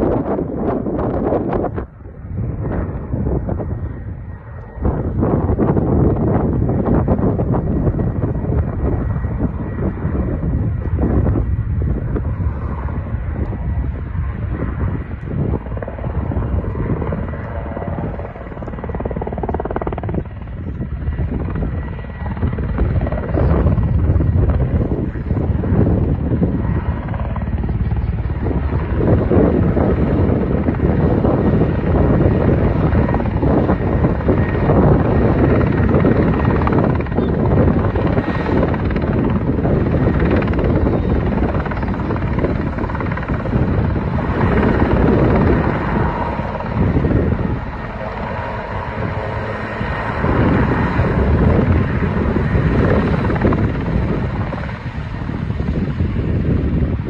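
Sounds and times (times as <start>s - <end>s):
helicopter rotor noise: 0.0s - 57.0s.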